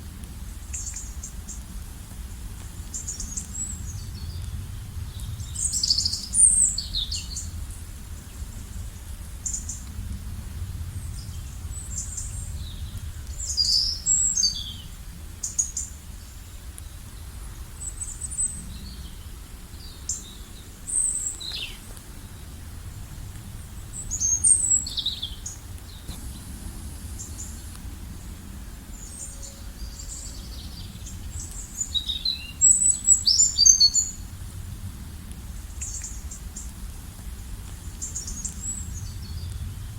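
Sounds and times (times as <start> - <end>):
steady low rumble: 0.0 - 32.0, 34.0 - 39.9
wild birds chirping: 11.1 - 34.2.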